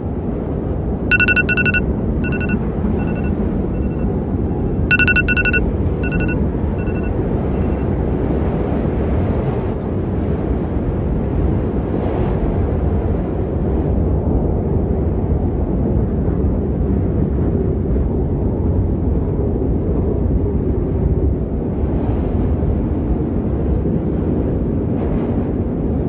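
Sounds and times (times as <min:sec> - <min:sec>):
quick electronic beeps: 0:01.1 - 0:04.0, 0:04.9 - 0:07.1.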